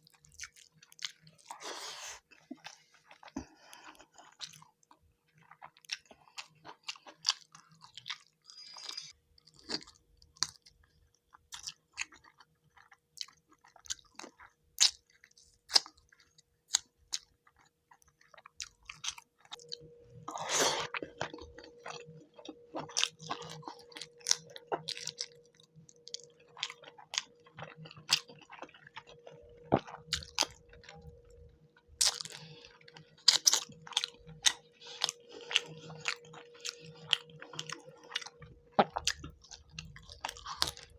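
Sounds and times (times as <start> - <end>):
chewing and wet mouth sounds: 0.0 - 40.9
faint steady hum: 18.0 - 40.9.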